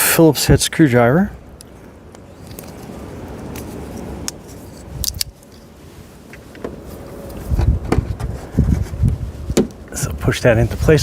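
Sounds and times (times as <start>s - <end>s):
dull knocks and thumps: 7.6s - 9.8s.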